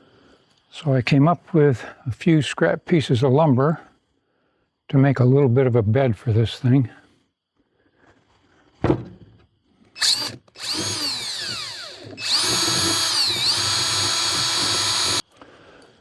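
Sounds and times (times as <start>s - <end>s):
power drill driving screws: 10.0s - 15.2s.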